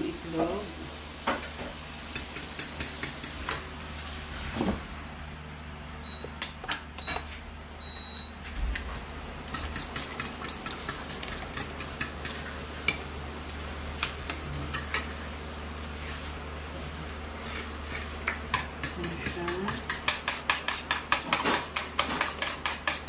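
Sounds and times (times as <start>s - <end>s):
eggs beaten in a bowl: 2.1s - 3.7s, 9.4s - 15.2s, 17.4s - 23.0s.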